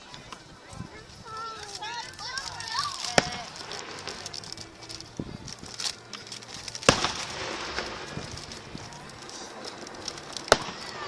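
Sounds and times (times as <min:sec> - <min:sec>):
firework bangs with echo: 0:06.8 - 0:08.8, 0:09.5 - 0:11.0.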